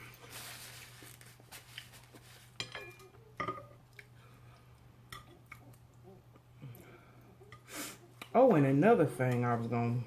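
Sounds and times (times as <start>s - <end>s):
person chewing food: 3.9s - 6.8s.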